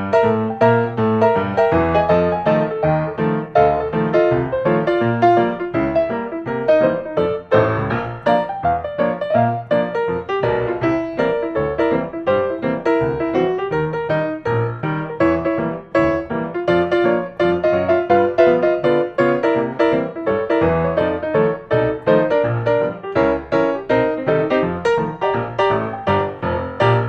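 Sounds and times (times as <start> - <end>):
piano music: 0.0 - 27.0.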